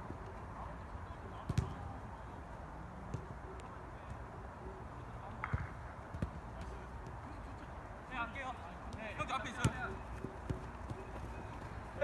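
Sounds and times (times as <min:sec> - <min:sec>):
steady background noise: 0:00.0 - 0:12.0
football being kicked: 0:01.5 - 0:01.8, 0:08.9 - 0:11.1.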